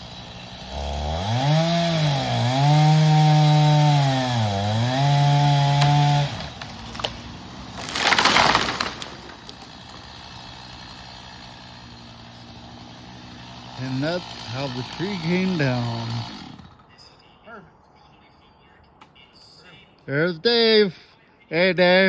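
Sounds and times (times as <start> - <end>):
chainsaw running at full throttle: 0.0 - 16.9
tree crashing down: 1.1 - 12.0.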